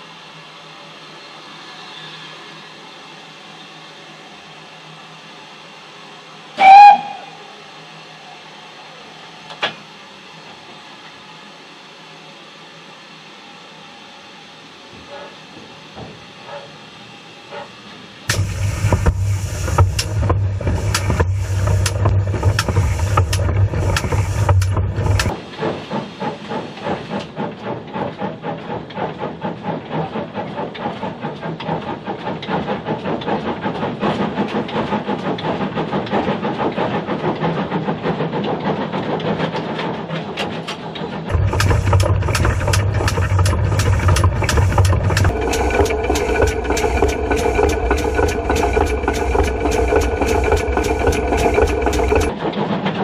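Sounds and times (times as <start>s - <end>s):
steam locomotive hissing: 0.0s - 53.0s
locomotive exhaust beat: 6.6s - 7.4s, 18.3s - 37.2s, 41.3s - 52.4s
heavy rumble with sharp knocks: 18.3s - 29.2s, 29.8s - 53.0s.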